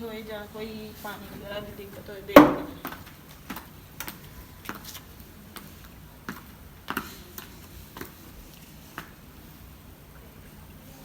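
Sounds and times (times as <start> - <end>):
high heel footsteps clicking: 2.4 - 5.0.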